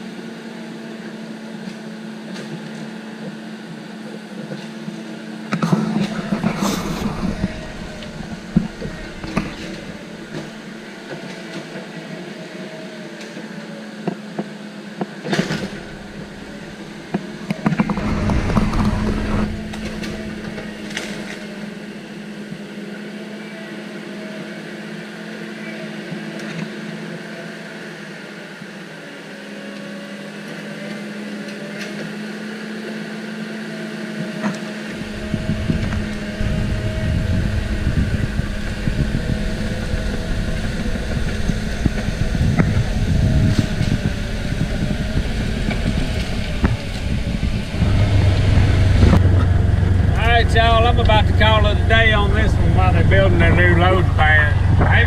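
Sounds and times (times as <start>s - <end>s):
diesel engine running: 0.0s - 27.9s, 34.5s - 55.0s
loud low rumble: 5.6s - 11.4s, 15.3s - 22.4s, 34.9s - 55.0s.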